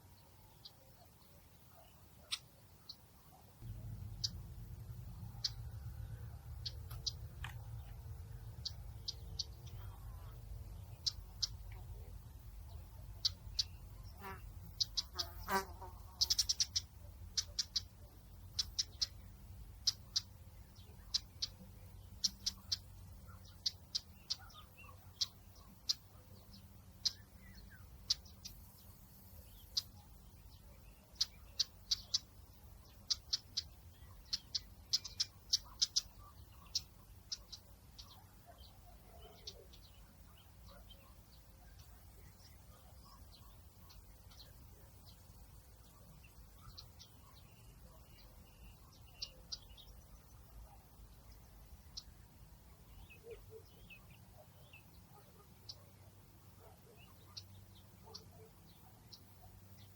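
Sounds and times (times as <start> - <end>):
small birds chirping: 0.0 - 59.9
low outdoor rumble: 3.6 - 15.2.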